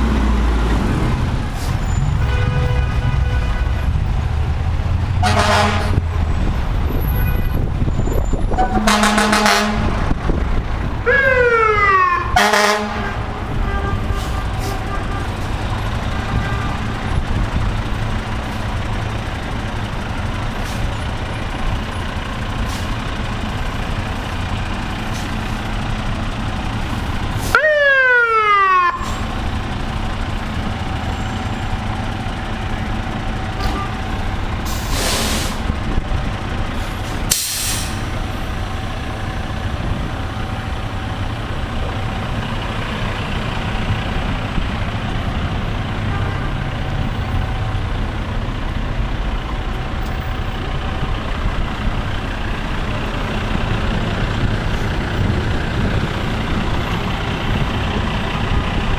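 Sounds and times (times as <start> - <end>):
fire truck engines rumbling: 0.0 - 58.9
air-brake hisses: 34.6 - 35.7, 37.3 - 38.1.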